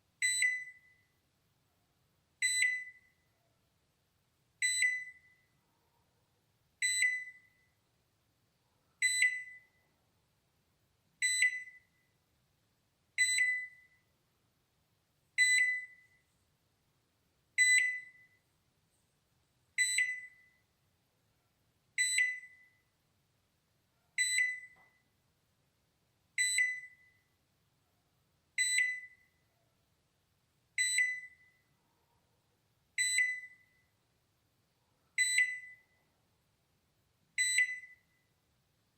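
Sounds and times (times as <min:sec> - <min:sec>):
microwave alarm beeping: 0:00.2 - 0:01.1, 0:02.4 - 0:03.2, 0:04.6 - 0:05.5, 0:06.8 - 0:07.7, 0:09.0 - 0:09.8, 0:11.2 - 0:12.0, 0:13.2 - 0:14.0, 0:15.4 - 0:16.2, 0:17.6 - 0:18.4, 0:19.8 - 0:20.7, 0:22.0 - 0:22.9, 0:24.2 - 0:25.0, 0:26.4 - 0:27.3, 0:28.6 - 0:29.4, 0:30.8 - 0:31.7, 0:33.0 - 0:33.9, 0:35.2 - 0:36.0, 0:37.4 - 0:38.3.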